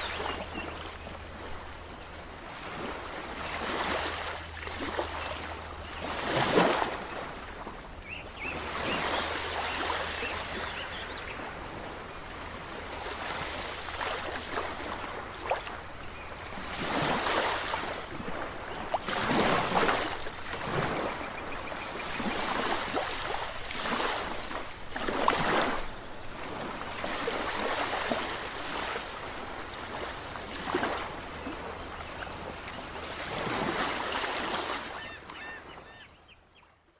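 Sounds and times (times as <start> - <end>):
ocean waves breaking on shore: 0.0 - 36.1.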